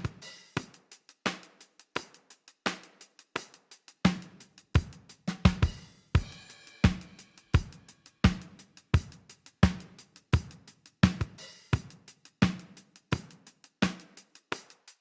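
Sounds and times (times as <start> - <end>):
hi-hat ticks: 0.0 - 15.0
cymbal wash: 6.2 - 8.4.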